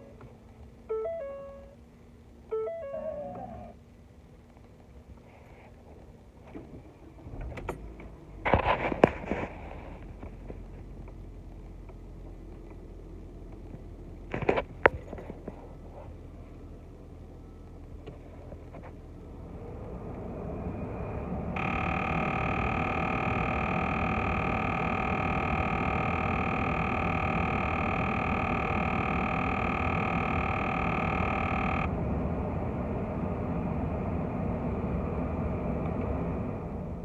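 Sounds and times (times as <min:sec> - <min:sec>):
low rumble of running car: 0:00.0 - 0:37.0
high buzzing drone: 0:21.6 - 0:31.9.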